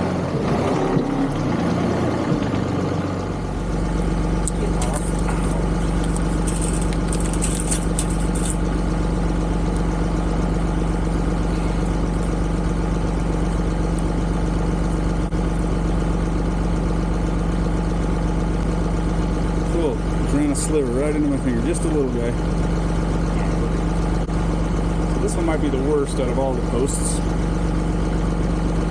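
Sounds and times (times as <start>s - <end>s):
tractor diesel engine running: 0.0s - 28.9s.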